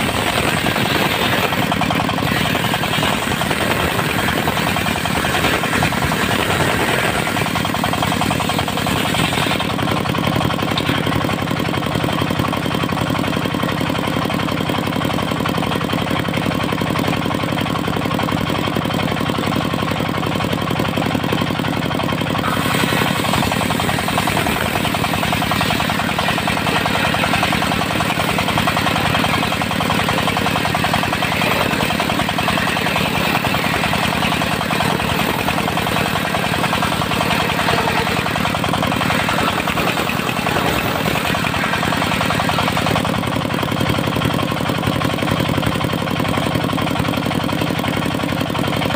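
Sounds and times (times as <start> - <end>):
diesel engine running: 0.0 - 48.9
hiss: 22.4 - 42.9.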